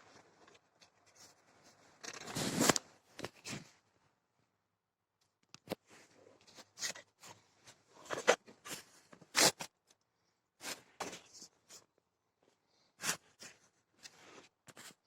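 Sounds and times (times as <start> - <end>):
plastic parts rustling and clicking: 0.1 - 3.8, 5.2 - 10.0.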